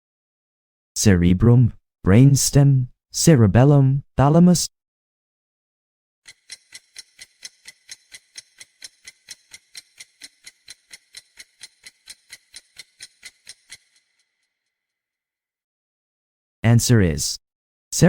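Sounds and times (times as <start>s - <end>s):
clock ticking: 6.3s - 14.2s.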